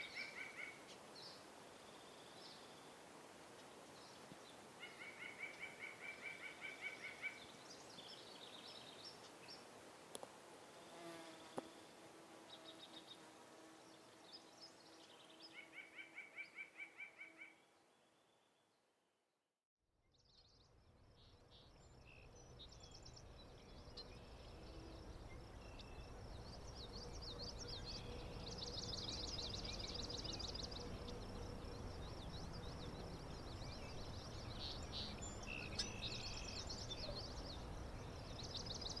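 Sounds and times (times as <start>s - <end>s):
birds trilling and chirping: 22.2s - 39.0s.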